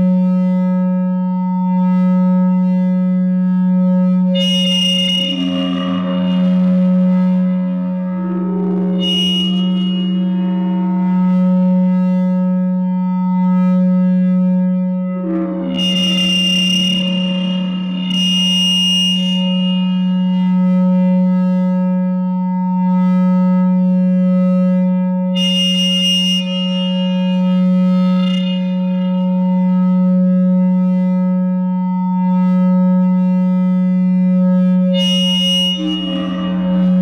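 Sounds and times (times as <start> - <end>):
low feedback drone: 3.5 - 24.0, 25.3 - 33.5, 34.7 - 37.0
shrill feedback flares: 4.4 - 13.1, 15.2 - 20.5, 25.4 - 30.2, 35.0 - 37.0.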